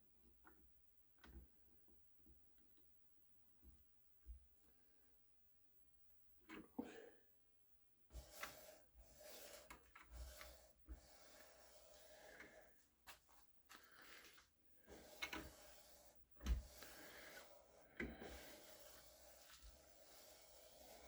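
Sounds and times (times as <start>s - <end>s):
rubbing and scraping on wood: 8.1s - 21.0s.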